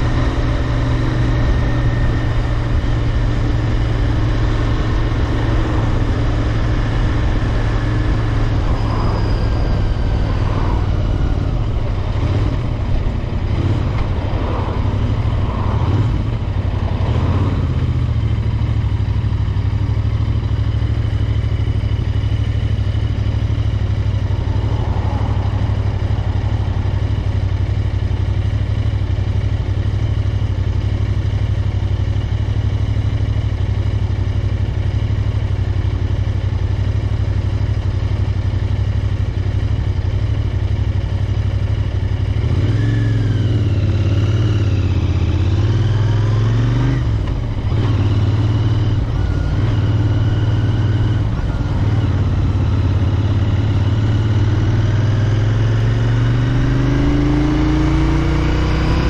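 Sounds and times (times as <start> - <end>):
motorcycle engine running: 0.0 - 59.0.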